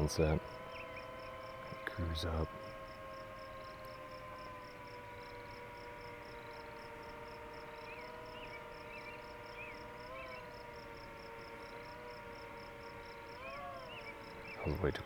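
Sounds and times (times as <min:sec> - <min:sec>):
bird chirping: 0:00.0 - 0:02.6, 0:07.6 - 0:10.8, 0:13.0 - 0:15.0
crickets pulsing: 0:00.0 - 0:15.0
drone motors whining: 0:00.0 - 0:15.0.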